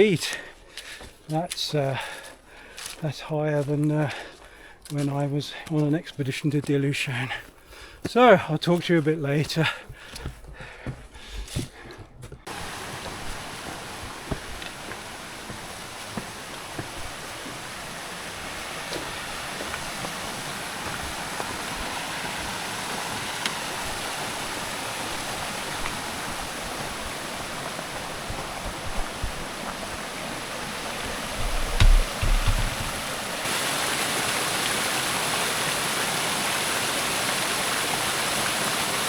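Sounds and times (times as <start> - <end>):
faint ticks and knocks: 31.4 - 33.1.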